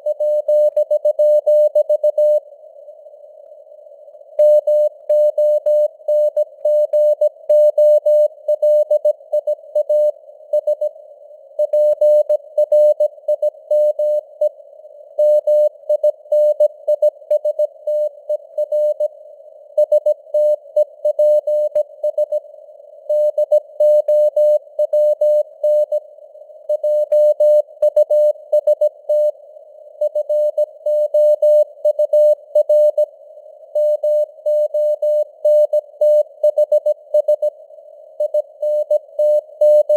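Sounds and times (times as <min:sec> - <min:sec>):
morse code beeps: 0:04.4 - 0:10.9, 0:38.2 - 0:39.9.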